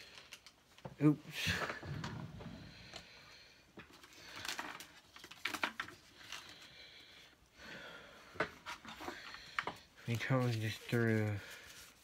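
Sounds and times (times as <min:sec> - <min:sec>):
cards rustling: 0:03.8 - 0:06.7, 0:08.6 - 0:12.0.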